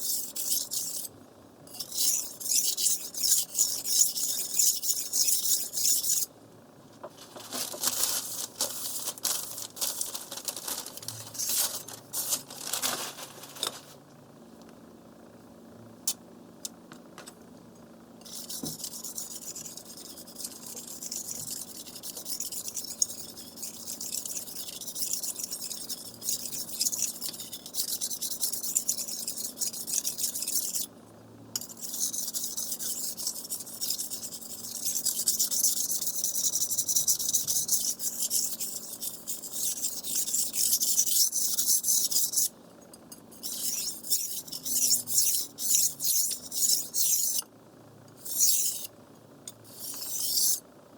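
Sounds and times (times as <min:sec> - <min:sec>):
knife scraping on whetstone: 0:00.0 - 0:01.1, 0:01.7 - 0:06.3, 0:18.2 - 0:30.9, 0:31.6 - 0:42.5, 0:43.4 - 0:47.4, 0:48.2 - 0:48.9, 0:49.7 - 0:50.6.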